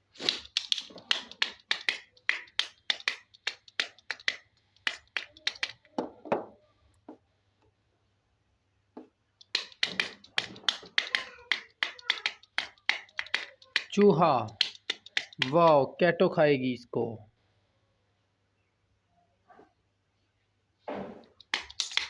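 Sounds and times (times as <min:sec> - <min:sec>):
hands tapping on hard objects: 0:00.2 - 0:07.2, 0:09.0 - 0:15.8, 0:21.2 - 0:22.0.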